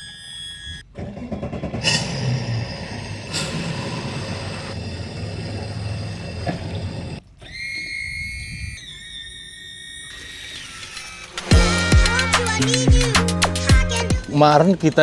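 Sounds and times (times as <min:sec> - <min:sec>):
boat engine drone: 0:00.0 - 0:08.4.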